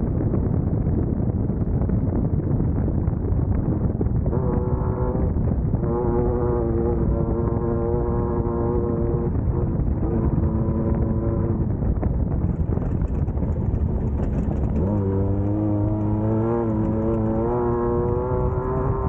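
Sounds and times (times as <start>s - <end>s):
race car engine revving: 4.3s - 11.7s, 12.6s - 19.0s.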